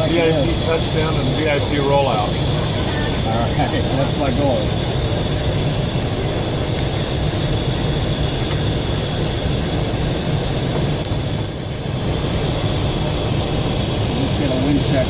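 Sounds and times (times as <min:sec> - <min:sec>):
thin high whine: 0:00.0 - 0:09.4
airflow and engine rumble: 0:00.0 - 0:15.0.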